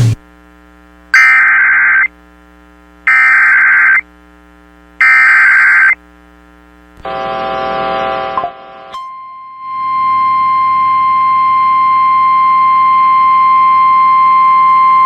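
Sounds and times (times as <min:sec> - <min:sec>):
shrill buzzing data bursts: 0:01.1 - 0:02.2, 0:03.0 - 0:04.1, 0:05.0 - 0:06.0
steady rough alert tone: 0:01.2 - 0:02.1, 0:03.1 - 0:04.0, 0:05.0 - 0:06.0.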